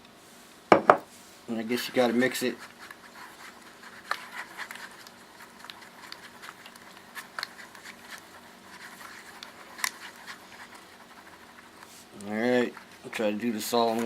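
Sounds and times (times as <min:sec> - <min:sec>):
spoon knocking a bowl: 0:00.7 - 0:01.0
spoon scraping a bowl: 0:01.9 - 0:11.9.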